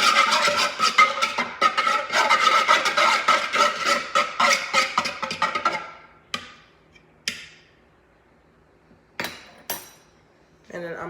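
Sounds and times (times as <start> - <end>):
eggs whisked in a bowl: 0.0 - 6.0.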